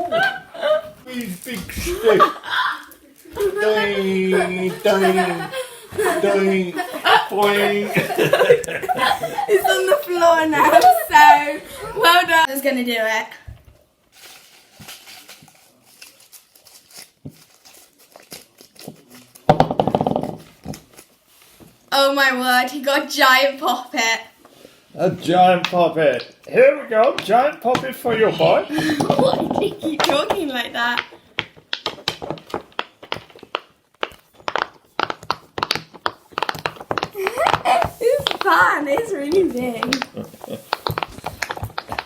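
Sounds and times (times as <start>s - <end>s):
faint crinkling: 24.3s - 42.0s.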